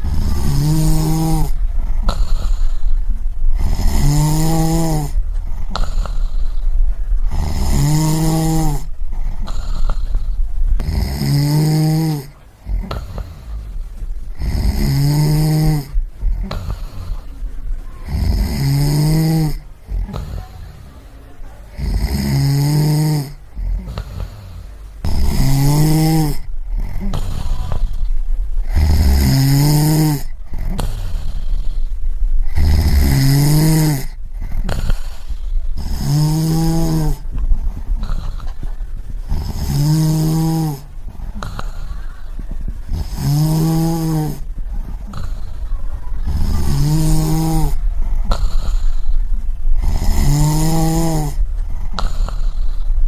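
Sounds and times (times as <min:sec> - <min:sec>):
person snoring: 0:00.0 - 0:17.4, 0:18.0 - 0:21.0, 0:21.7 - 0:53.0
steady low rumble: 0:00.0 - 0:53.0.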